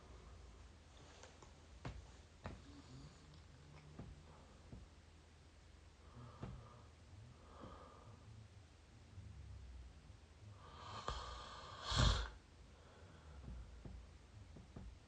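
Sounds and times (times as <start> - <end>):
soft breaths: 0.0 - 5.1, 5.9 - 9.6, 10.4 - 15.0
person snoring: 10.5 - 12.4.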